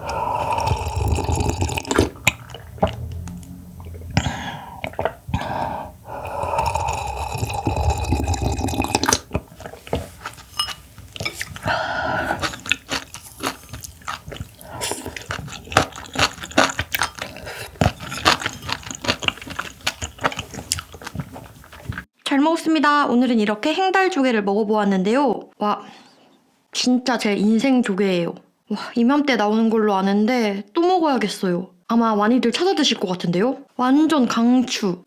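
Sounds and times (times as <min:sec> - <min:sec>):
wet chewing with mouth clicks: 0:00.0 - 0:22.1
wet slurping: 0:00.0 - 0:22.1.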